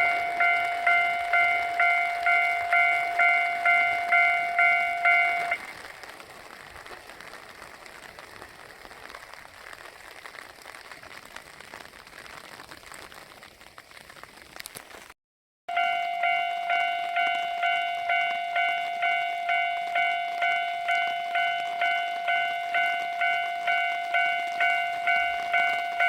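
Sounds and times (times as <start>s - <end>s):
level-crossing warning bell: 0.0s - 5.9s, 15.7s - 26.0s
faint steady hiss: 0.0s - 15.1s.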